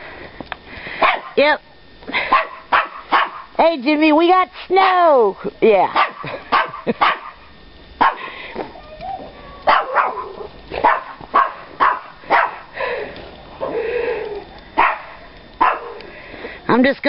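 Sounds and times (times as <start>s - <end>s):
dog barking: 1.0s - 1.4s, 2.3s - 3.5s, 5.9s - 7.4s, 8.0s - 8.2s, 9.6s - 12.7s, 14.8s - 16.0s.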